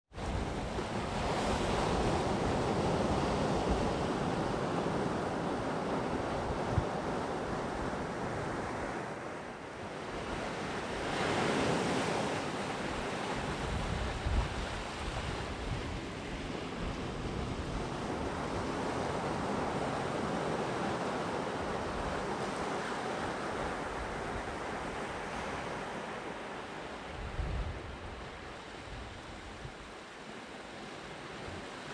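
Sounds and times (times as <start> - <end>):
sea waves breaking on a beach: 0.1 - 31.9
wind buffeting microphone: 12.9 - 20.0, 27.0 - 30.0.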